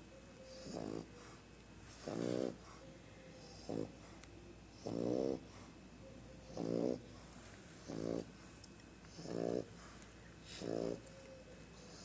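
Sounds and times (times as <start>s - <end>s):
dog snoring: 0.5s - 2.8s, 3.4s - 5.7s, 6.4s - 8.4s, 9.1s - 11.1s, 11.8s - 12.0s.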